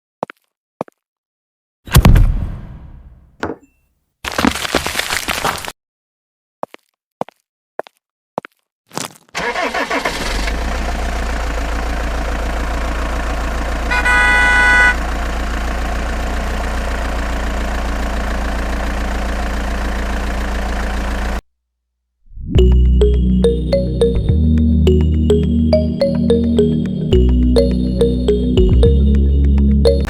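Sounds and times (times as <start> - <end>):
engine running: 9.4 - 21.4, 22.6 - 30.0.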